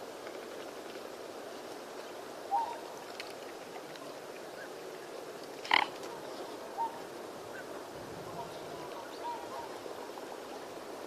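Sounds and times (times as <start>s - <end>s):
background hum of nature: 0.0s - 11.0s
bird call: 2.5s - 2.8s, 8.4s - 9.9s.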